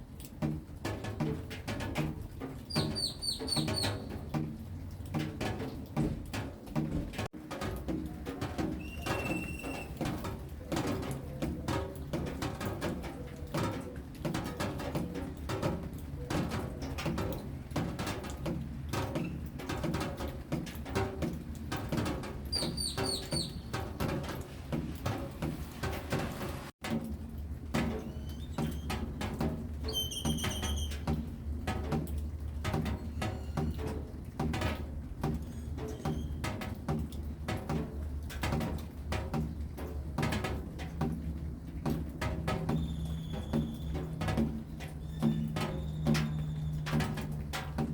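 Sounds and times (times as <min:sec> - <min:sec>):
raindrops dripping and tapping: 0:00.0 - 0:47.9
small bird chirping: 0:02.7 - 0:04.1, 0:22.5 - 0:23.7.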